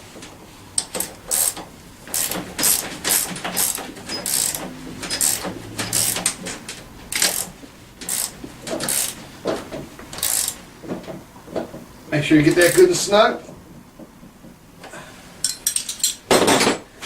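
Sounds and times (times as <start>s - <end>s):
socket ratchet clicking: 0.8s - 6.4s, 7.1s - 9.2s, 10.2s - 10.6s.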